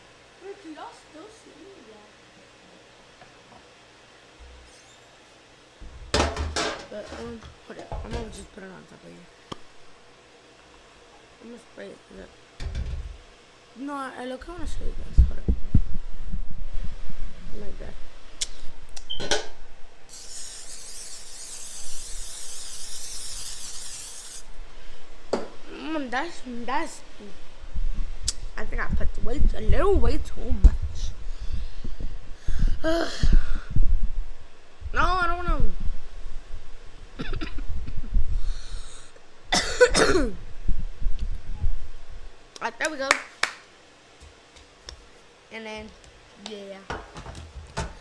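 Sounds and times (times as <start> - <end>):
aerosol spray hissing: 20.1 - 24.5
person coughing: 37.2 - 37.6, 39.5 - 40.4.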